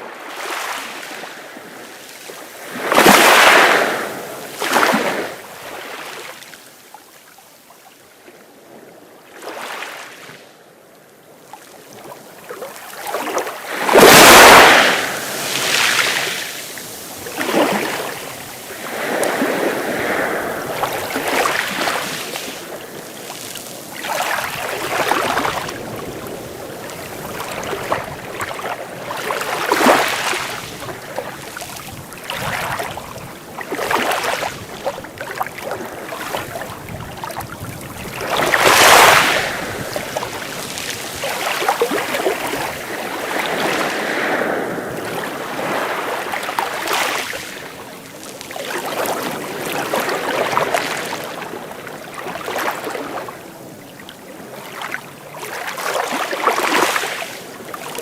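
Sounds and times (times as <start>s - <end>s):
sea waves breaking: 0.0s - 6.8s, 11.8s - 58.0s.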